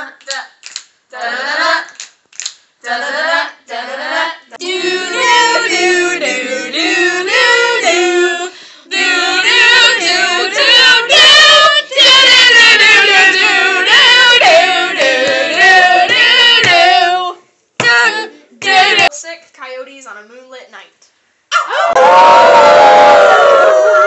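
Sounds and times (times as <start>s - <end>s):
young people singing: 1.1s - 2.1s, 2.8s - 19.1s.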